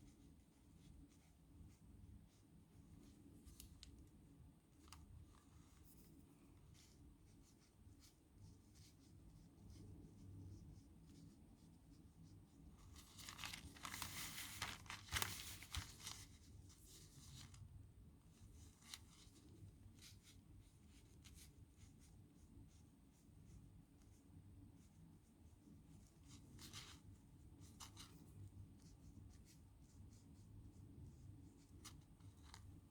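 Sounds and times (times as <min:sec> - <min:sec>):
paper rustling: 0:12.8 - 0:17.6.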